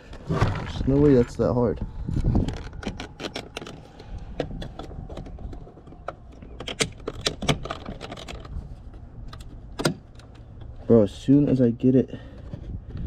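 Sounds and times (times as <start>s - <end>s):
plastic scraping: 0.0s - 1.5s.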